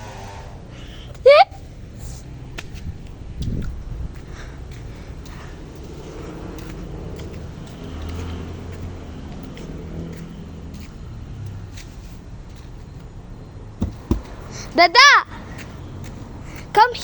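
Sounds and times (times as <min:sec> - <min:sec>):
distant chainsaw engine running: 0:00.0 - 0:01.2.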